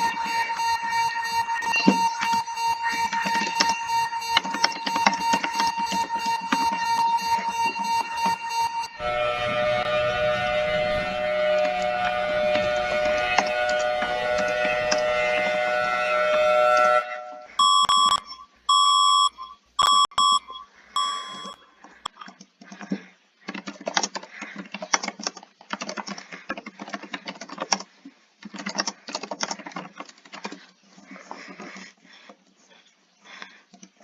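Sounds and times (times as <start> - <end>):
short electronic beeps: 0.0 - 9.0, 17.6 - 21.6
bursts of noise: 0.0 - 15.6
emergency alert alarm: 0.0 - 21.6.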